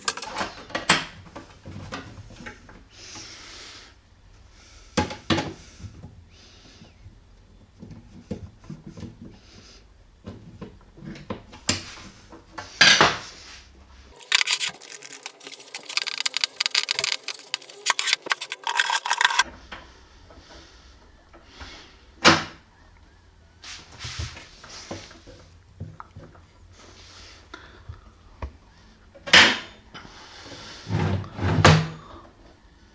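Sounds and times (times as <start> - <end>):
knocks and clicks of tools: 0.0 - 0.4, 14.2 - 19.4
rapid clicking and rattling: 0.0 - 0.4, 14.2 - 19.4.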